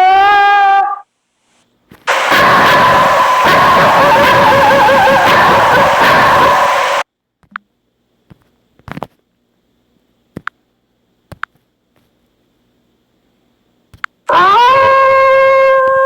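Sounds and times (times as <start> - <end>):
wolf howling: 0.0 - 1.0, 2.1 - 7.0, 14.3 - 16.0.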